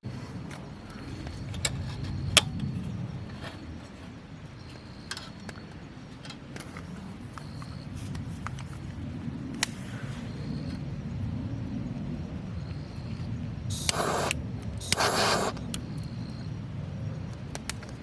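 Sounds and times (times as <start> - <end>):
campfire crackling: 8.2 - 18.0
sharp pops of fire: 13.7 - 16.2.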